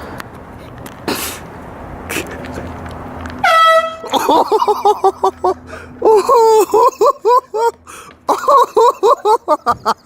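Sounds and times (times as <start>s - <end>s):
high-pitched laughter: 4.0s - 10.0s.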